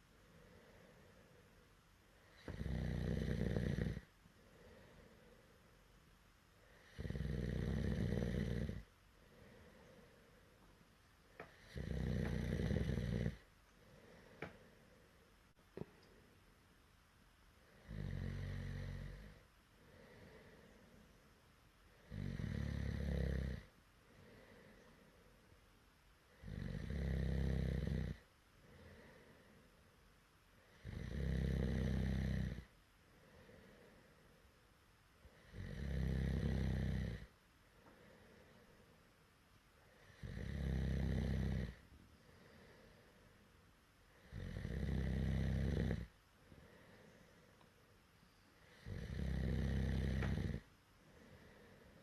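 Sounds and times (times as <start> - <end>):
quiet breathing: 0.0 - 16.7, 17.3 - 52.0
person snoring loudly: 2.4 - 4.1, 6.8 - 8.8, 11.6 - 13.4, 22.1 - 23.7, 26.4 - 28.2, 30.8 - 32.7, 35.5 - 37.3, 40.1 - 41.8, 44.2 - 46.1, 48.7 - 50.6.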